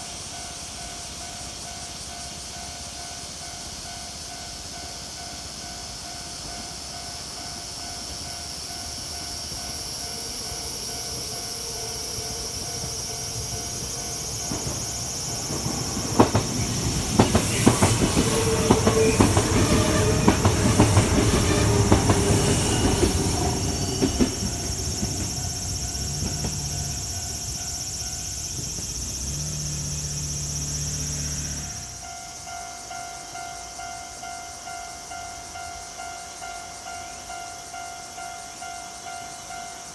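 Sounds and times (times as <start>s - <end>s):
crossing warning bells: 0.0s - 39.9s
train passing: 0.0s - 39.9s
wheels clacking over rail joints: 7.5s - 32.1s.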